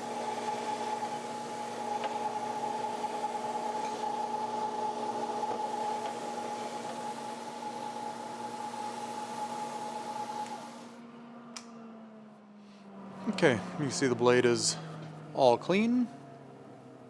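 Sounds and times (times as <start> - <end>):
blade cleaner humming and hissing: 0.0 - 11.0.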